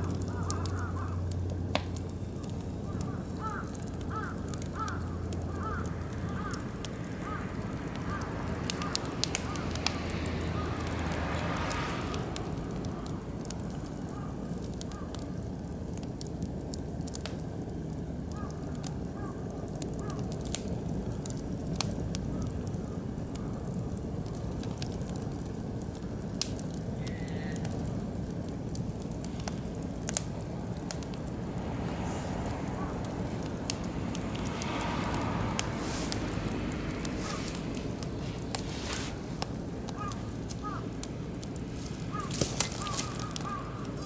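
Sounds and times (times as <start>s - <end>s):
birds calling: 0.0s - 1.4s, 2.4s - 11.4s, 37.0s - 44.0s
wood fire crackling and popping: 0.0s - 44.0s.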